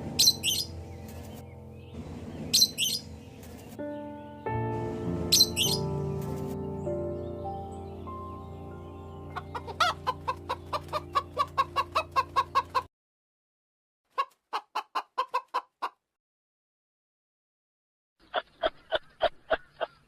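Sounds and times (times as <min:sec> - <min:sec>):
soft background music: 0:00.0 - 0:12.9
chicken clucking: 0:09.3 - 0:12.9, 0:14.1 - 0:16.0, 0:18.2 - 0:20.0.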